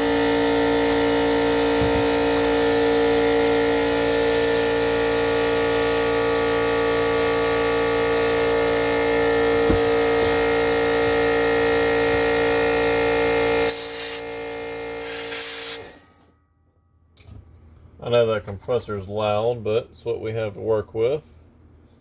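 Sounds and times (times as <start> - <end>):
air compressor running: 0.0 - 16.3
compressed air hisses: 13.6 - 14.2, 15.0 - 16.0.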